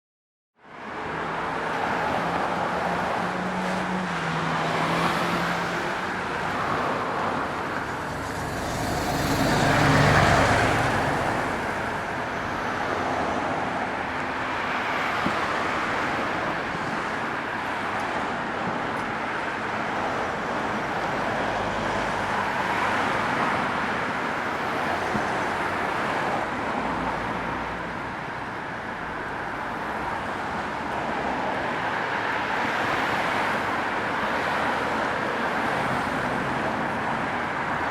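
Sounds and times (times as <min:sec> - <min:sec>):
street traffic: 0:00.6 - 0:37.9
vehicle passing close: 0:07.8 - 0:11.9.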